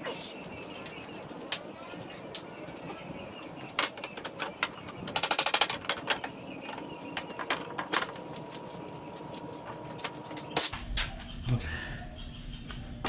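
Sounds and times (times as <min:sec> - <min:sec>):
rattling clicks: 0:03.7 - 0:09.1.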